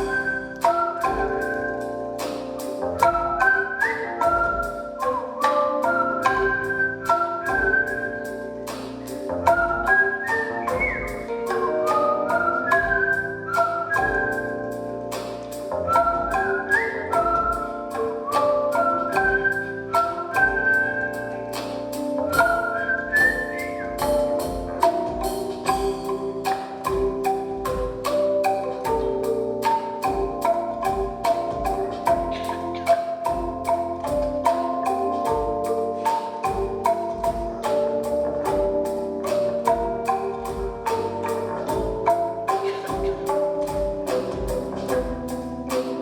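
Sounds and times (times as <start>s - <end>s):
held higher melodic line: 0.0s - 46.0s
tuned bamboo bars struck: 0.0s - 46.0s
low thuds: 20.4s - 46.0s.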